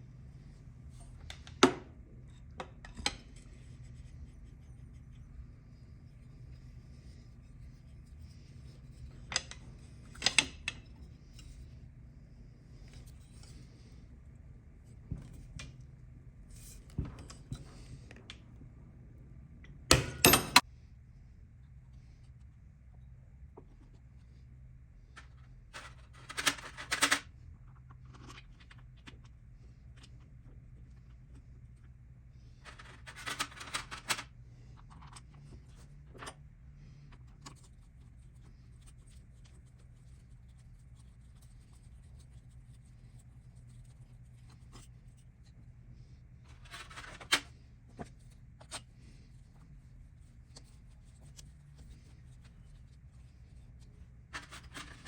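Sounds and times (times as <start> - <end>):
steady low hum: 0.0 - 55.0
metal tools clinking and rattling: 20.0 - 20.6.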